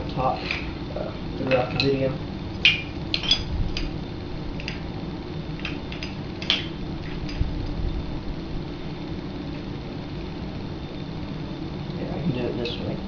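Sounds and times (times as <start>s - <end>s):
steady low hum: 0.0s - 13.0s
metal tools tapping on steel: 1.4s - 2.0s, 2.6s - 3.9s.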